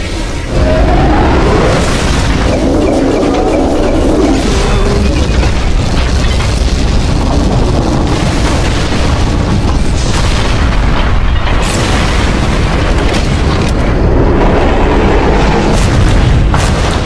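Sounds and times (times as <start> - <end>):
booming explosion rumble: 0.0 - 17.0.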